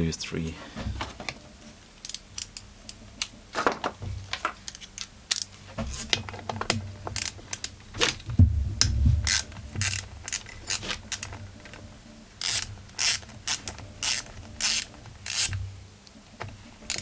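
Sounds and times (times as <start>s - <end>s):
ratchet clicking: 2.0s - 3.3s, 4.7s - 5.6s, 7.1s - 7.8s, 9.2s - 11.8s, 12.4s - 15.6s
handling knocks: 5.7s - 11.6s.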